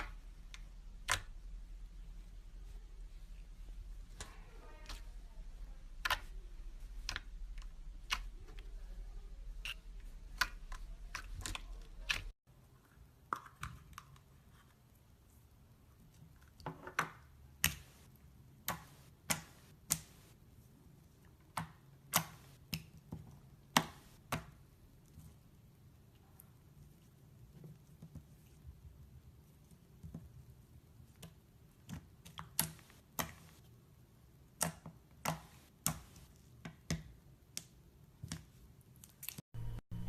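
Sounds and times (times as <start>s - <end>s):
low hum: 39.6s - 40.0s.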